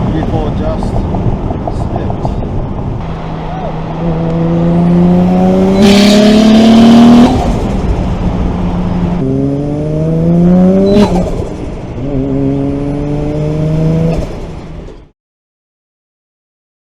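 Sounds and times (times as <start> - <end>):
car engine revving: 2.5 - 15.1.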